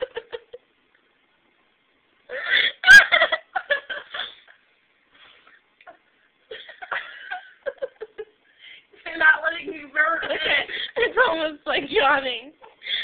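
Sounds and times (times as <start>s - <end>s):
woman giggling: 0.0s - 0.6s, 2.3s - 4.6s, 5.9s - 8.4s.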